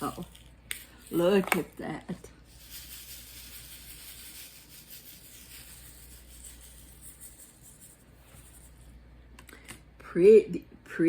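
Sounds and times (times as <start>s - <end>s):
steady low hum: 0.0s - 10.9s
faint rubbing and handling: 2.5s - 9.0s.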